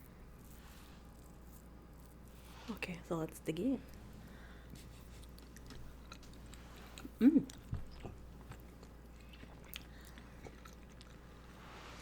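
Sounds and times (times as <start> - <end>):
biting and chewing: 4.7 - 11.4.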